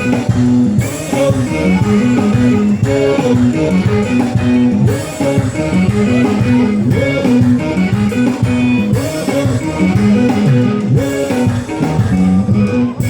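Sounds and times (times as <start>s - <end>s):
live pop band instrumental: 0.0s - 13.0s.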